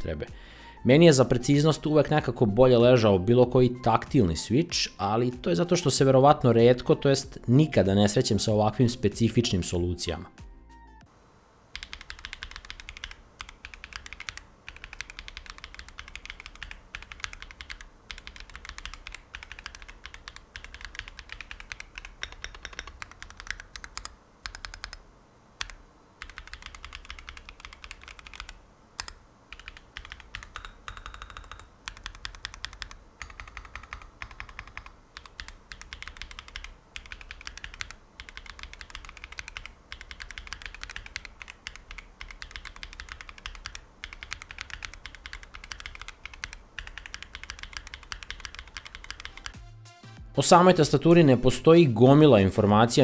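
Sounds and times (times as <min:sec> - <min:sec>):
mechanical keyboard typing: 0:11.7 - 0:25.0, 0:25.6 - 0:49.6.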